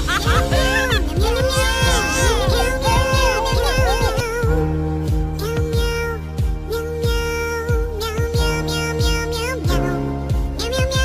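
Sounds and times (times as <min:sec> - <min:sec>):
music with steady beat and melody: 0:00.0 - 0:11.0.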